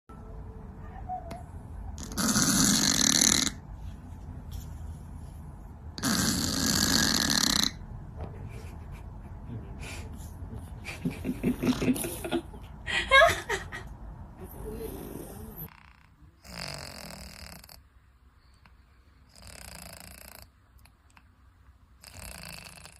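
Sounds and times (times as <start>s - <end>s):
cat snoring: 2.0s - 3.6s, 6.0s - 7.8s, 14.5s - 17.8s, 19.3s - 20.5s, 22.0s - 22.9s.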